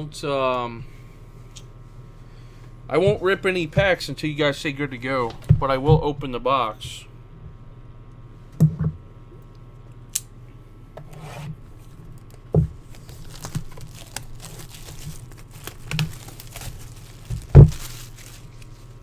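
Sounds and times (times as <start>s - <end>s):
cardboard and wrapping tearing: 12.8s - 19.0s.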